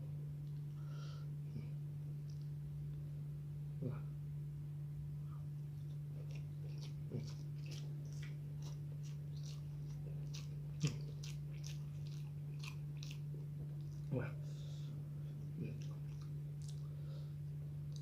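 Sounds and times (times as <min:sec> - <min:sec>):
steady low hum: 0:00.0 - 0:18.0
close chewing with mouth clicks: 0:05.6 - 0:14.3, 0:15.2 - 0:18.0.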